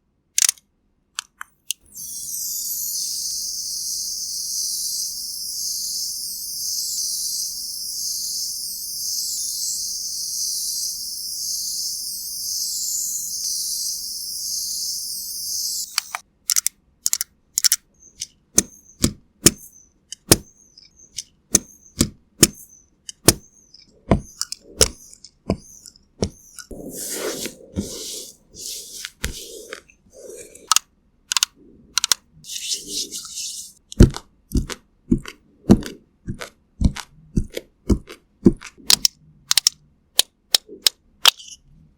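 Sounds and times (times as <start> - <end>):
sharp irregular cracks and clicks: 0.3 - 1.8, 15.9 - 26.7, 30.7 - 32.2, 33.9 - 41.6
shrill high-pitched chirring: 1.8 - 16.2, 22.6 - 30.6, 32.5 - 33.8.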